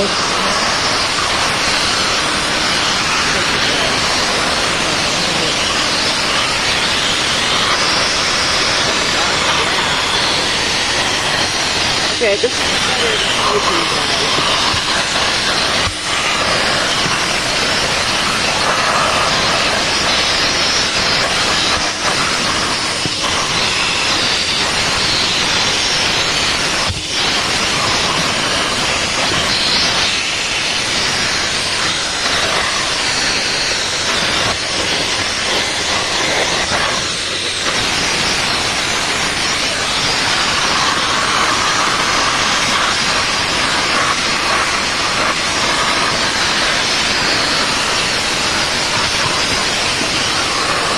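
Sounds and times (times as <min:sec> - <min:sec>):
vacuum hose sucking air: 0:00.0 - 0:50.9.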